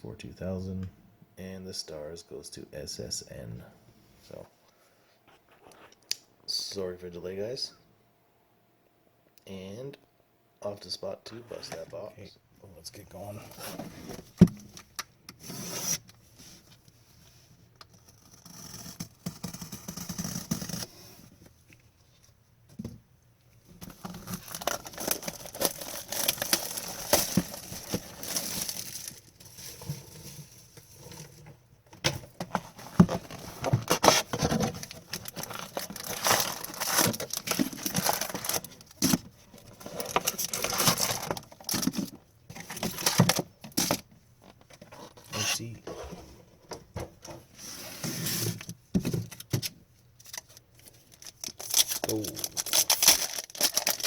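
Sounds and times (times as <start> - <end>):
pack wrappers tearing and crinkling: 23.9 - 29.7, 33.9 - 44.0, 50.2 - 54.0.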